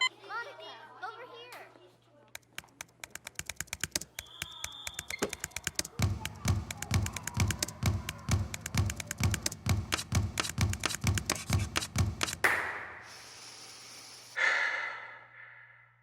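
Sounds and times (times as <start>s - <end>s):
rapid sharp tapping: 2.4s - 12.8s
faint hiss: 13.0s - 14.4s.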